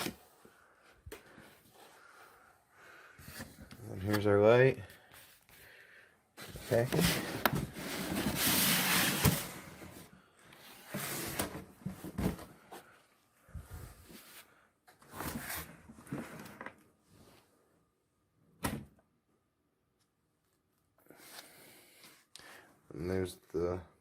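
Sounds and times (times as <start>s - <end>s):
cardboard box rustling and scraping: 6.5s - 10.0s.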